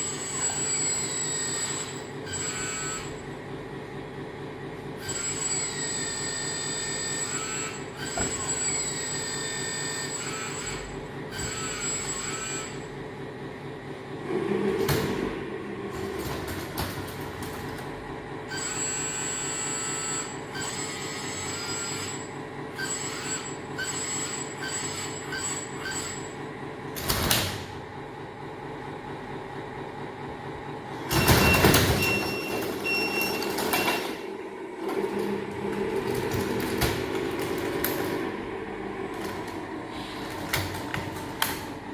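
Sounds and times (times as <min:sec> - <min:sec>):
high-pitched motor whines: 0:00.0 - 0:03.2, 0:05.0 - 0:12.9, 0:18.5 - 0:26.4
hydraulic pump hum: 0:00.0 - 0:41.9.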